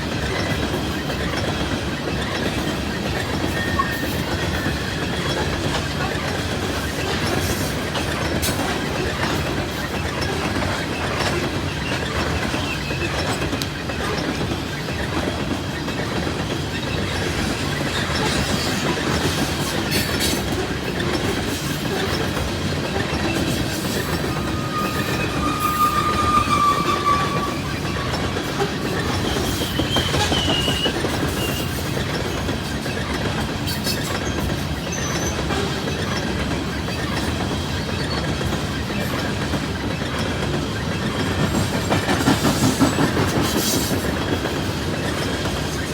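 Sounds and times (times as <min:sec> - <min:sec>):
train wheels clattering on rails: 0:00.0 - 0:45.9
high wheel squeal: 0:21.6 - 0:32.0.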